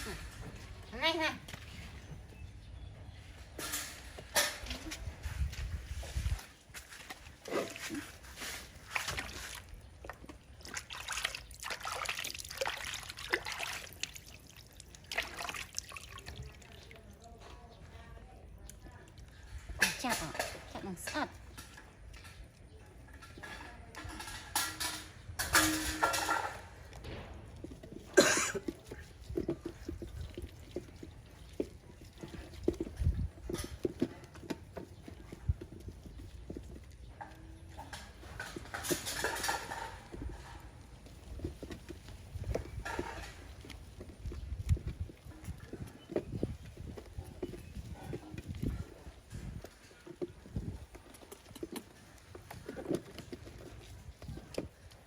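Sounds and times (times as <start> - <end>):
bath water splashing: 7.0 - 9.8, 10.5 - 17.0.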